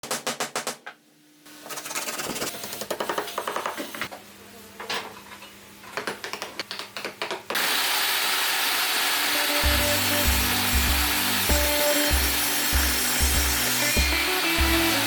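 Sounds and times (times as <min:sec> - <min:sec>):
power sander on wood: 0:07.6 - 0:15.0.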